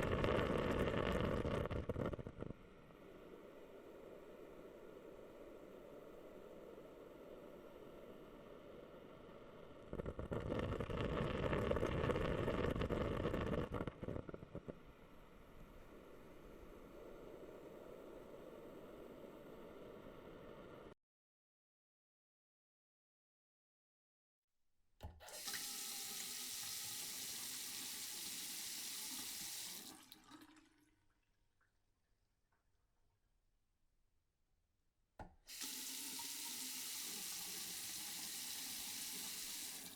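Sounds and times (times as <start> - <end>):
water running into a sink: 25.2 - 31.1, 35.5 - 39.9.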